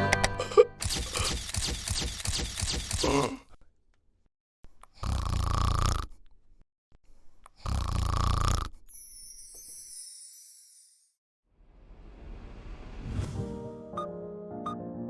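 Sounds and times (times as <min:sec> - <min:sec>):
person snoring: 0:05.0 - 0:06.2, 0:07.6 - 0:08.8.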